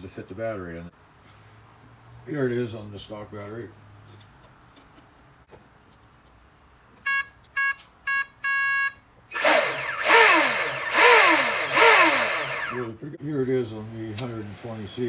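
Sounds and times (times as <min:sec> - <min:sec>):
speed controller beeps: 0:09.3 - 0:12.8
electric motor whining: 0:09.3 - 0:12.9.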